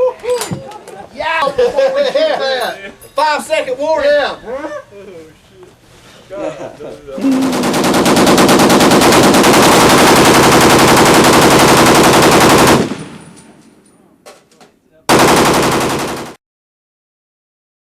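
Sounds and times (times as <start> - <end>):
automatic gunfire bursts: 7.4 - 13.3, 15.1 - 16.4.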